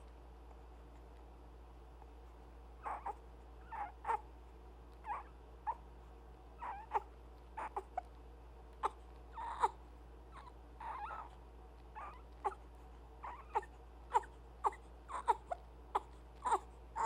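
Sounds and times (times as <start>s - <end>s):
baby whimpering cries: 2.8s - 4.3s, 5.0s - 5.8s, 6.6s - 8.0s, 8.8s - 11.4s, 12.0s - 12.6s, 13.2s - 17.0s.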